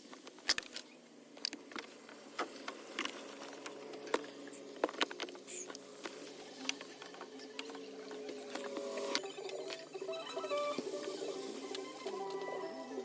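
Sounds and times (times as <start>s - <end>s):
hand tools clicking and tapping: 0.1s - 9.8s.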